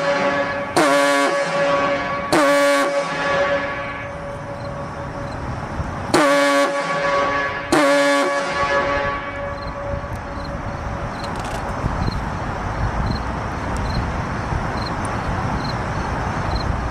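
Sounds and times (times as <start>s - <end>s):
foghorn blasts: 0.0s - 5.3s, 6.1s - 10.6s.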